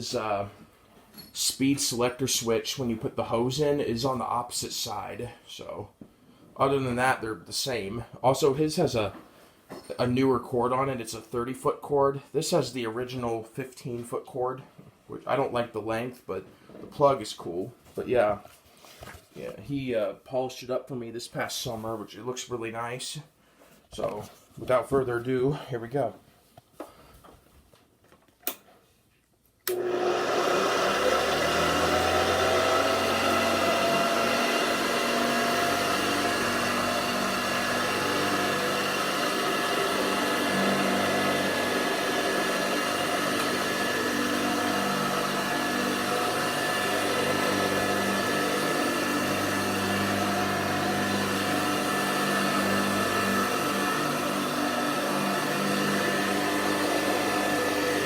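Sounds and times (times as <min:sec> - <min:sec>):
vacuum cleaner motor whining: 0:29.7 - 0:58.0.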